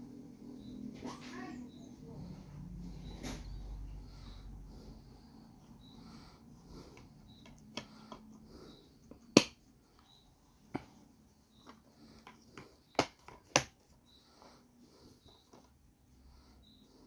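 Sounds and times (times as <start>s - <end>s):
plastic case clicks and snaps: 9.4s - 9.6s.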